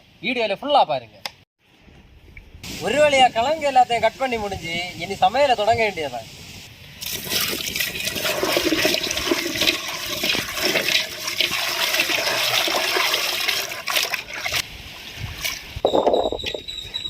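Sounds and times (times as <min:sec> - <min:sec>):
water splashing and pouring: 0:07.0 - 0:16.1.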